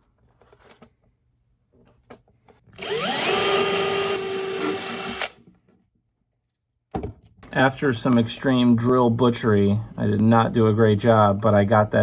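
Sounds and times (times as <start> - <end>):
power drill whining: 2.8 - 5.4.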